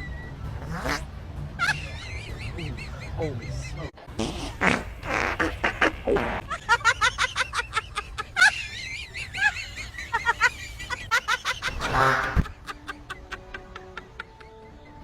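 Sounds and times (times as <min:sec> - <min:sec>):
person laughing and giggling: 0:01.6 - 0:03.8, 0:05.4 - 0:14.7.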